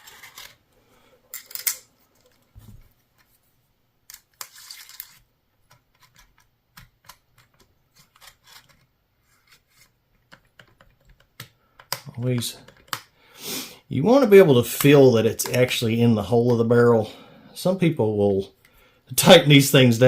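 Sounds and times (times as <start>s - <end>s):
small parts clicking and tapping: 1.3s - 2.4s, 4.1s - 8.9s, 10.1s - 13.1s.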